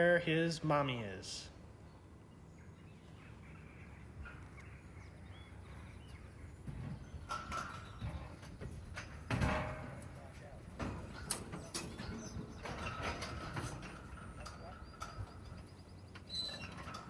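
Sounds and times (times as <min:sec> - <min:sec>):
metal chute rattling and knocking: 0:07.3 - 0:15.7.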